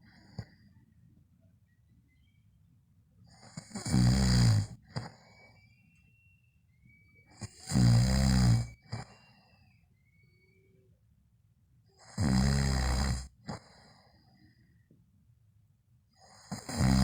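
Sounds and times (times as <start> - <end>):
faint high whistle: 1.7 - 2.6, 5.2 - 7.6, 8.6 - 11.0
person snoring loudly: 3.5 - 4.8, 7.4 - 9.0, 12.0 - 13.6, 16.4 - 17.0.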